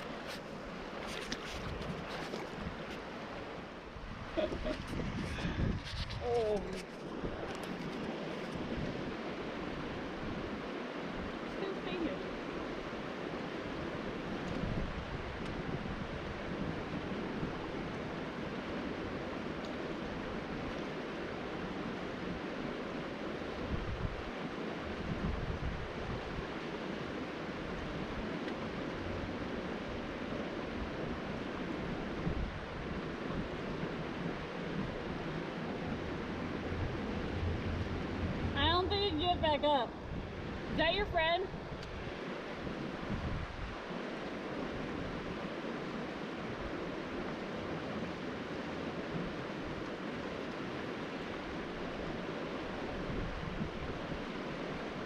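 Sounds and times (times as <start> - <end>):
creek water flowing: 0.0 - 55.0
wind buffeting microphone: 3.9 - 12.1, 13.9 - 17.9, 23.6 - 45.6, 51.4 - 55.0.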